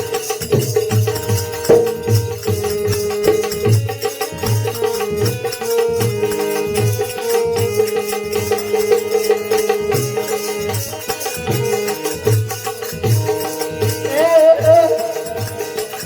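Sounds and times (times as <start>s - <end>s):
hand cymbals keeping time: 0.0s - 16.0s
regular drum beat: 0.4s - 4.0s
held melody tone: 1.6s - 3.2s.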